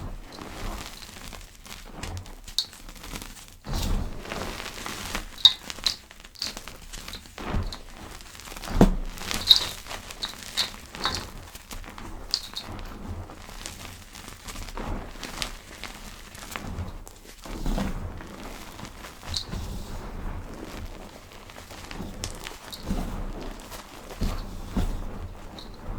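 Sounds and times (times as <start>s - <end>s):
powder crushed by hand crackling: 0.2s - 17.5s
soft thumps: 8.6s - 11.3s.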